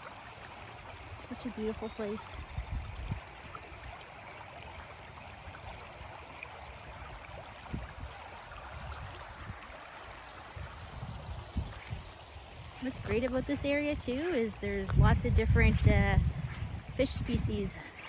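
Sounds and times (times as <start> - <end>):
river water rushing: 0.0 - 13.1.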